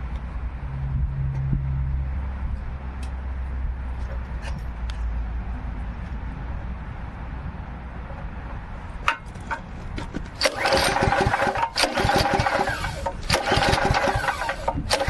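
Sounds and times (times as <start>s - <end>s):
low rumble: 0.0s - 2.8s
wood chipper engine running: 10.4s - 15.0s.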